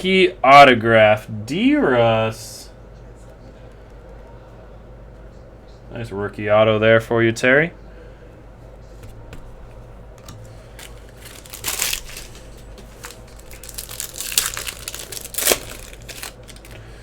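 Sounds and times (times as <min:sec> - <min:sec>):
low steady hum: 0:00.0 - 0:17.0
plastic wrapper crinkling and tearing: 0:10.2 - 0:16.9.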